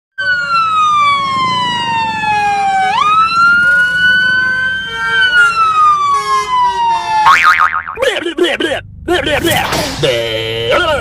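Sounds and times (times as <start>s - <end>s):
siren-like wailing tone: 0.2s - 7.7s.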